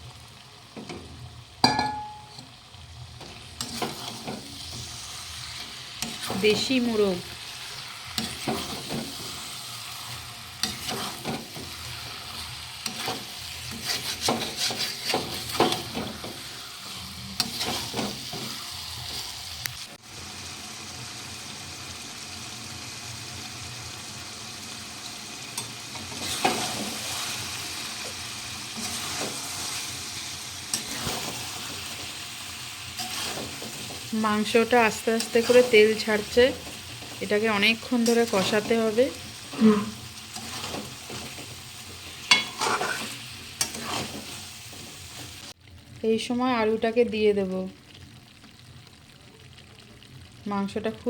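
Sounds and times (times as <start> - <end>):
meat sizzling in oil: 0.0 - 51.0
spatula scraping a pan: 2.2 - 19.5, 25.6 - 34.1, 34.9 - 45.4.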